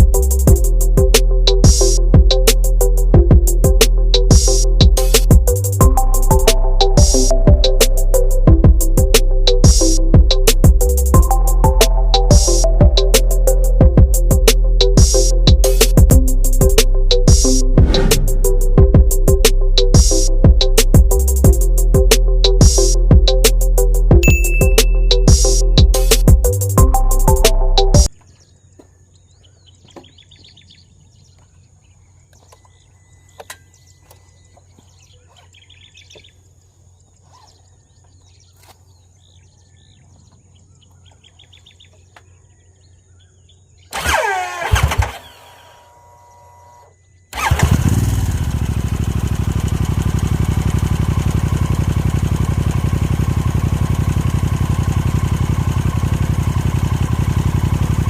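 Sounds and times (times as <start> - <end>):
birds chirping: 0.0 - 8.8, 24.3 - 47.7
motorcycle engine idling: 0.0 - 23.4, 47.4 - 58.0
loud burst with sliding pitch: 17.4 - 19.5.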